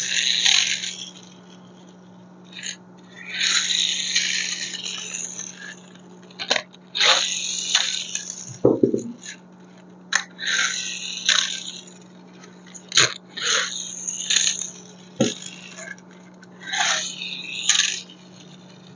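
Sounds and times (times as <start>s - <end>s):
steady low hum: 0.0s - 18.9s
scraping and rubbing of toys: 2.5s - 9.4s, 10.3s - 18.9s
sharp clicks and knocks: 8.5s - 9.2s.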